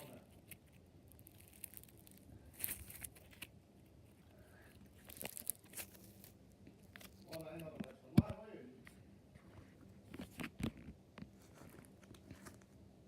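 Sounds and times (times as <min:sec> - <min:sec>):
foam beads crunching: 0:00.0 - 0:03.6, 0:04.7 - 0:07.6.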